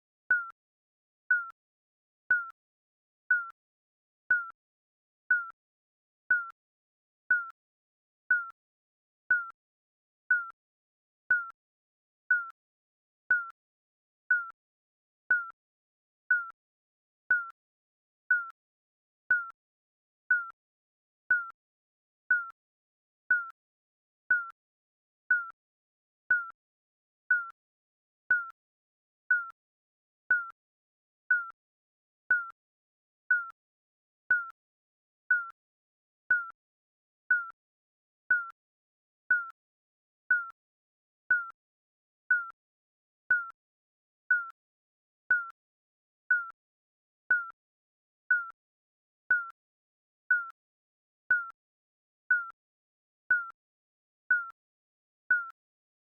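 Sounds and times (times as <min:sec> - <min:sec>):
timer beeping: 0:00.3 - 0:00.6, 0:01.3 - 0:01.6, 0:02.3 - 0:02.6, 0:03.3 - 0:03.6, 0:04.3 - 0:04.6, 0:05.3 - 0:05.6, 0:06.3 - 0:06.6, 0:07.3 - 0:07.6, 0:08.3 - 0:08.6, 0:09.3 - 0:09.6, 0:10.3 - 0:10.6, 0:11.3 - 0:11.6, 0:12.3 - 0:12.5, 0:13.3 - 0:13.5, 0:14.3 - 0:14.5, 0:15.3 - 0:15.6, 0:16.3 - 0:16.5, 0:17.3 - 0:17.5, 0:18.3 - 0:18.5, 0:19.3 - 0:19.6, 0:20.3 - 0:20.6, 0:21.3 - 0:21.5, 0:22.3 - 0:22.6, 0:23.3 - 0:23.5, 0:24.3 - 0:24.5, 0:25.3 - 0:25.6, 0:26.3 - 0:26.6, 0:27.3 - 0:27.6, 0:28.3 - 0:28.5, 0:29.3 - 0:29.6, 0:30.3 - 0:30.6, 0:31.3 - 0:31.6, 0:32.3 - 0:32.6, 0:33.3 - 0:33.6, 0:34.3 - 0:34.6, 0:35.3 - 0:35.6, 0:36.3 - 0:36.6, 0:37.3 - 0:37.6, 0:38.3 - 0:38.6, 0:39.3 - 0:39.6, 0:40.3 - 0:40.6, 0:41.3 - 0:41.6, 0:42.3 - 0:42.6, 0:43.3 - 0:43.6, 0:44.3 - 0:44.6, 0:45.3 - 0:45.6, 0:46.3 - 0:46.6, 0:47.3 - 0:47.6, 0:48.3 - 0:48.6, 0:49.3 - 0:49.6, 0:51.3 - 0:51.6, 0:52.3 - 0:52.6, 0:53.3 - 0:53.6, 0:54.3 - 0:54.6, 0:55.3 - 0:55.6.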